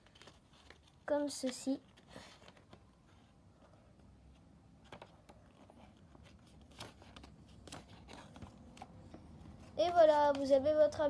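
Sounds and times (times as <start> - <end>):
paper rustling and tapping: 0.0 - 10.7.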